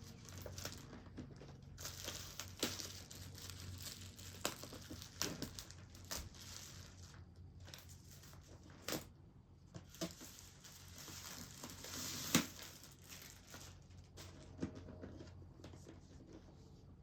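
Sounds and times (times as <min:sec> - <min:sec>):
paper packaging rustling: 0:00.0 - 0:09.1, 0:09.8 - 0:16.4
cardboard snapping: 0:12.2 - 0:12.6.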